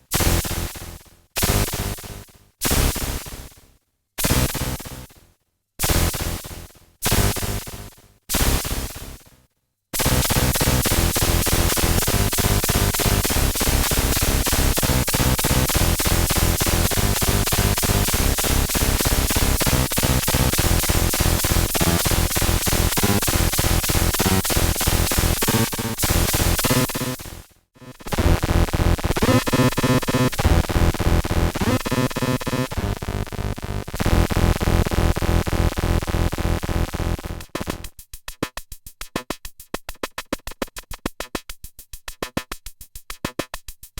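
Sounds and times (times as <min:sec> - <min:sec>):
buzzy synthesizer notes: 0:11.8 - 0:27.4, 0:28.1 - 0:37.8.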